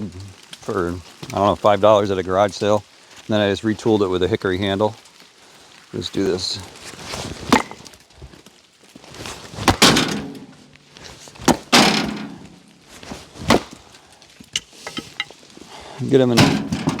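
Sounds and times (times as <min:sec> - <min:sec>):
axe chopping wood: 0:09.6 - 0:10.4, 0:11.4 - 0:12.3, 0:13.4 - 0:13.8.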